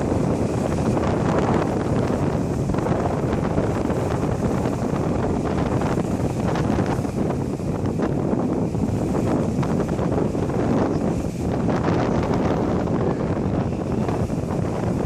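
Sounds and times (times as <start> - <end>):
sea waves washing ashore: 0.0 - 15.0
wind buffeting microphone: 0.0 - 15.0.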